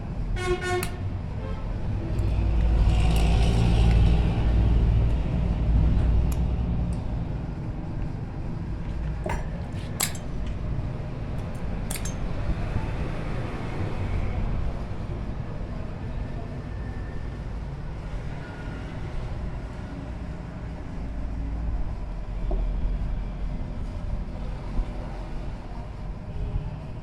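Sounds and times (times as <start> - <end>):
metallic clinks of metal parts: 9.2 - 10.6, 11.4 - 12.5.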